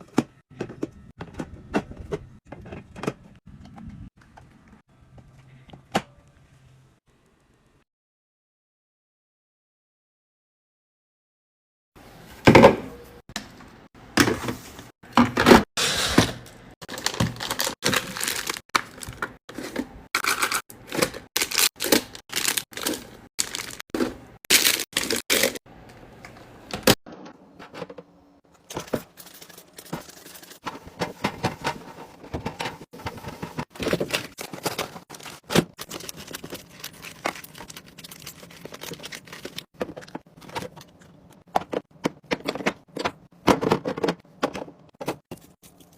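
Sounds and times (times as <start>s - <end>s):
plastic packaging crinkling and tearing: 16.9s - 23.8s, 24.5s - 25.6s, 33.8s - 40.1s
containers clicking and scraping: 27.6s - 45.9s.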